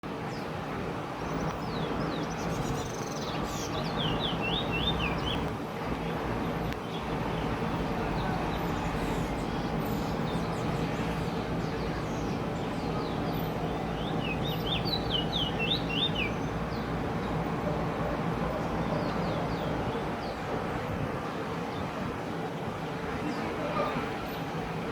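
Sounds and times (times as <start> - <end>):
bird whistled song: 14.0 - 16.4.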